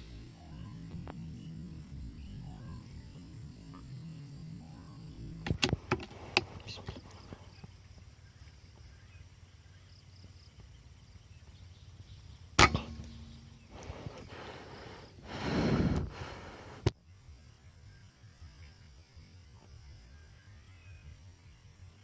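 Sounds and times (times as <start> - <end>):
air rifle shot: 12.6 - 15.0.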